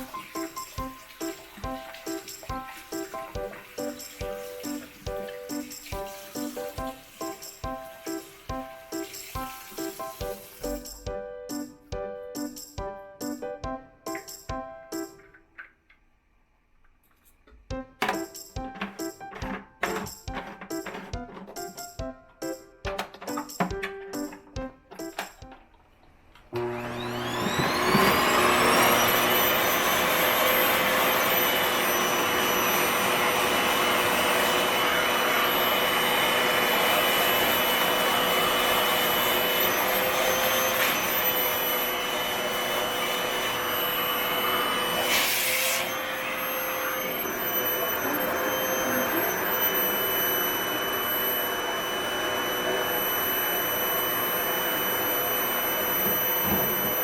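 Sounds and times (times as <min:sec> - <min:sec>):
vacuum cleaner motor whine: 0:00.0 - 0:10.8, 0:26.5 - 0:57.0.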